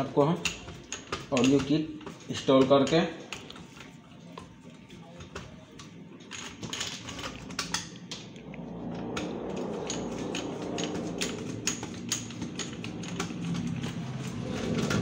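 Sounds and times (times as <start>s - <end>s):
plastic and metal parts rattling: 0.0s - 4.0s, 5.1s - 15.0s
low background rumble: 7.9s - 15.0s.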